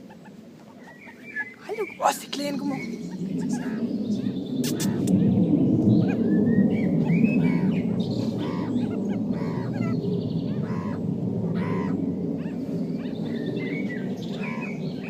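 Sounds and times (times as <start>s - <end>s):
meerkats squeaking: 0.0s - 5.1s, 6.0s - 6.3s, 7.0s - 13.2s
low background rumble: 0.0s - 15.0s.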